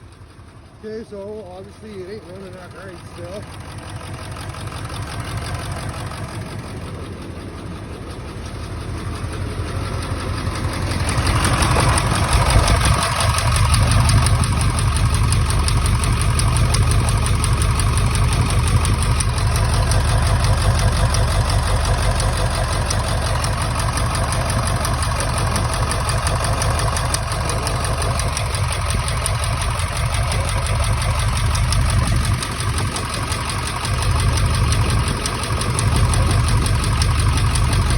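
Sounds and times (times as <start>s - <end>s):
diesel engine idling roughly: 0.0s - 37.9s.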